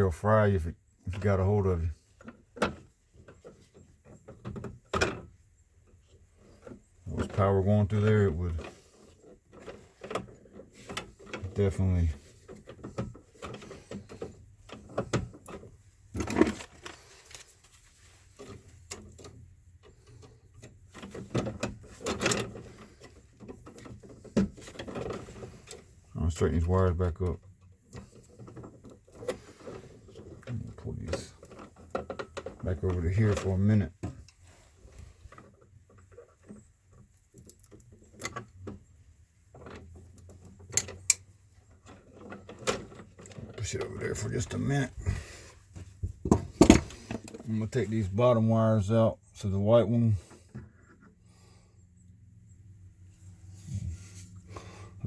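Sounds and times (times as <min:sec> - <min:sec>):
wires scraping and rustling: 0:00.0 - 0:51.6, 0:52.9 - 0:55.0
tools rattling in metal box: 0:06.4 - 0:26.7, 0:39.6 - 0:48.1.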